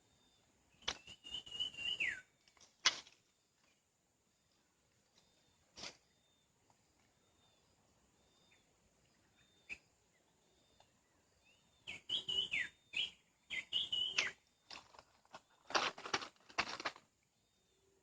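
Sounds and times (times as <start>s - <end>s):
bird whistling calls: 0.8s - 2.3s, 11.8s - 14.4s.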